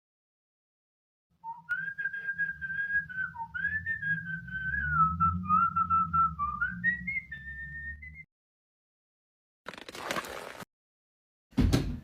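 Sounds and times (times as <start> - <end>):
whistled tune: 1.4 - 8.3
low droning backing: 3.0 - 7.4.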